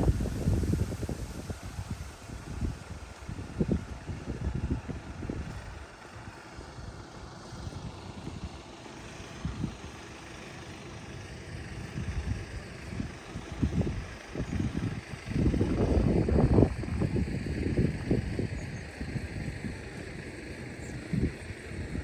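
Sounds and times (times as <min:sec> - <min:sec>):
wind buffeting microphone: 0:00.0 - 0:06.4, 0:11.7 - 0:22.0
faint outdoor hiss: 0:00.0 - 0:17.8.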